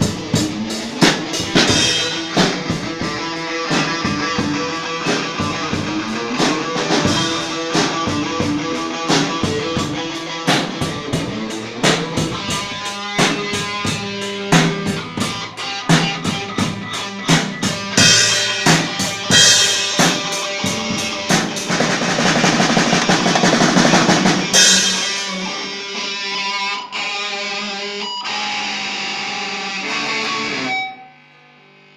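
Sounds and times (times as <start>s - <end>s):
drum kit beats: 0.0s - 26.9s
guitar chords: 0.0s - 31.9s.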